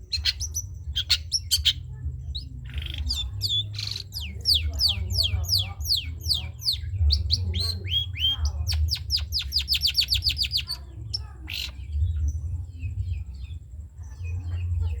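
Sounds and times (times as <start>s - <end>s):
bird singing fast notes: 0.0s - 12.3s
steady low hum: 0.0s - 15.0s.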